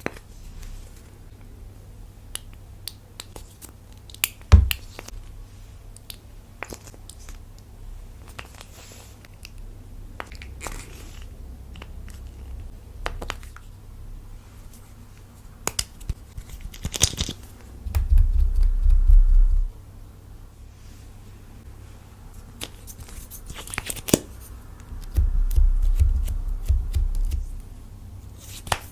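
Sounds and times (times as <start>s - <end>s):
loud low rumble: 17.8s - 19.7s, 24.8s - 27.6s.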